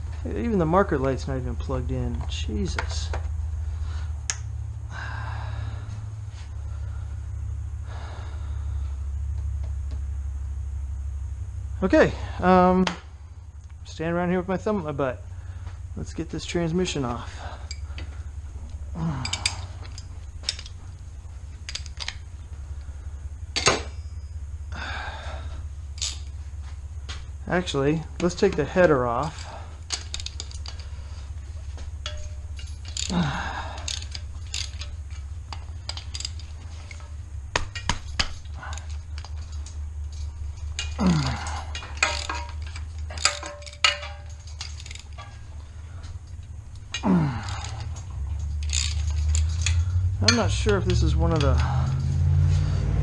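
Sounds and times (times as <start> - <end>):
steady low hum: 0.0 - 53.0
hand tools clinking on metal: 19.0 - 21.0, 21.6 - 22.4, 23.6 - 25.3, 25.9 - 26.4, 27.6 - 52.5.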